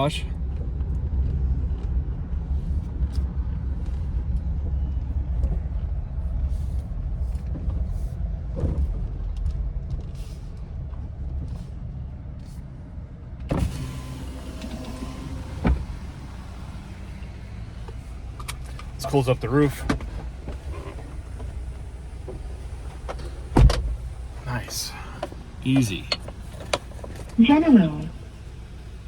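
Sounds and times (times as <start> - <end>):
truck engine idling: 0.0 - 29.0
power window motor: 13.5 - 19.1, 19.9 - 24.4.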